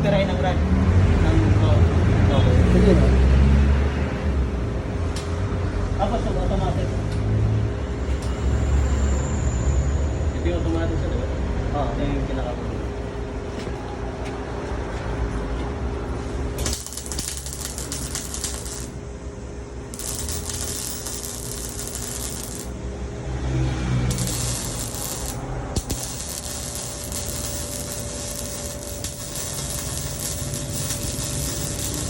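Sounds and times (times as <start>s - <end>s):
faint machine hum: 11.4s - 32.0s
welding arc crackling: 16.6s - 19.1s, 19.9s - 22.8s, 24.1s - 32.0s.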